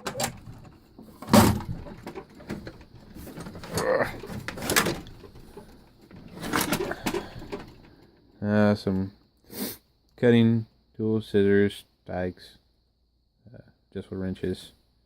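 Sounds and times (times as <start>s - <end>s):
metal drawers sliding: 0.0s - 7.9s.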